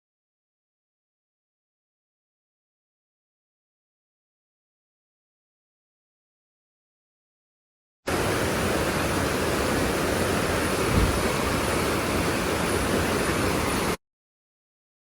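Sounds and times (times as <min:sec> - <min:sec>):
mountain stream rushing: 0:08.1 - 0:14.0.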